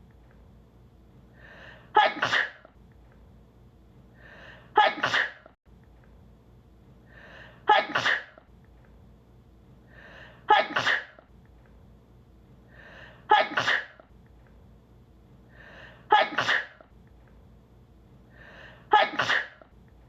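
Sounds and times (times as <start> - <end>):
woman sneezing: 1.9 - 2.7, 4.7 - 5.5, 7.6 - 8.4, 10.4 - 11.2, 13.3 - 14.0, 16.1 - 16.8, 18.9 - 19.7.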